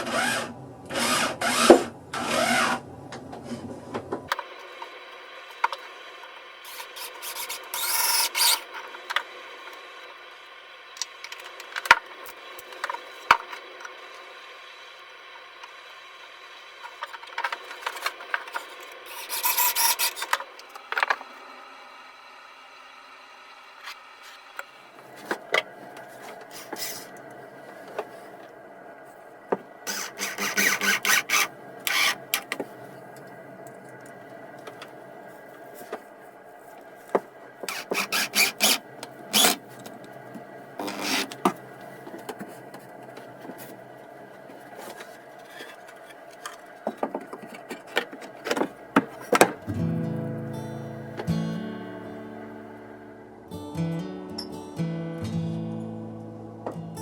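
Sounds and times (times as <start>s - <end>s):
scraping and rubbing wood: 17.4s - 20.5s, 25.1s - 28.4s, 29.9s - 32.9s, 37.1s - 40.0s, 40.8s - 43.8s, 44.4s - 49.6s.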